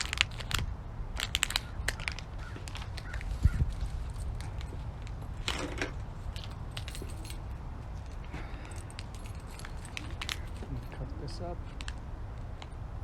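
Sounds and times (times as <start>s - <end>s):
small hard objects clicking: 0.0s - 3.3s
scraping rustle: 1.2s - 12.0s.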